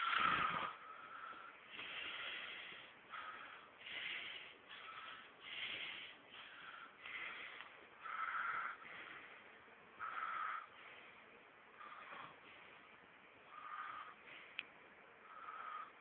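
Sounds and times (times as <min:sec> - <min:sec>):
man snoring: 0:00.0 - 0:00.8.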